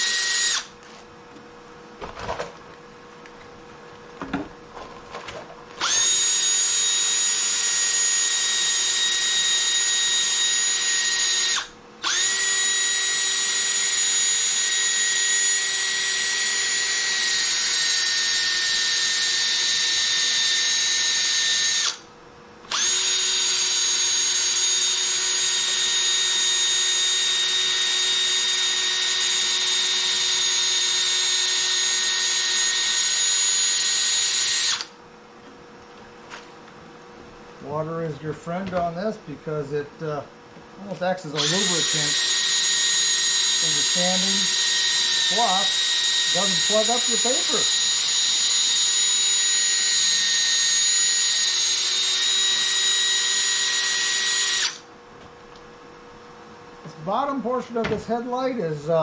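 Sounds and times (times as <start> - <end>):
drill whine: 0.0 - 0.8, 5.8 - 22.1, 22.7 - 35.0, 41.2 - 54.9.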